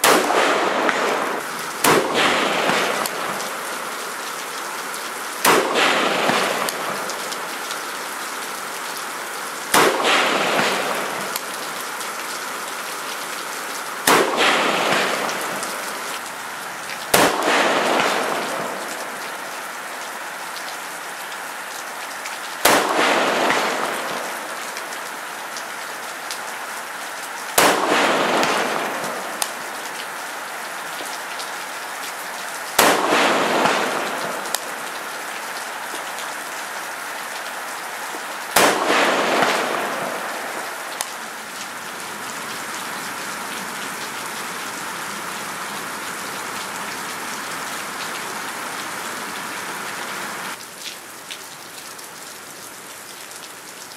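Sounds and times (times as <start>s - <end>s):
rifle shots: 0.0s - 3.6s, 5.4s - 7.2s, 9.7s - 11.5s, 14.0s - 16.2s, 17.1s - 19.1s, 22.6s - 24.4s, 27.6s - 29.6s, 32.8s - 34.7s, 38.6s - 40.9s.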